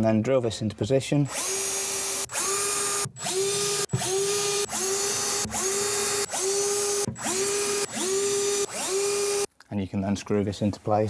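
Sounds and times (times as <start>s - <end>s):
electric drill whining: 1.3s - 9.5s.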